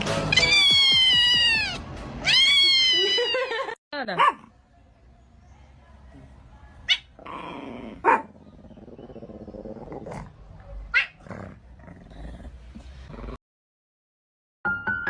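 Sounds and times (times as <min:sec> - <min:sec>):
pet growling: 0:07.2 - 0:13.4.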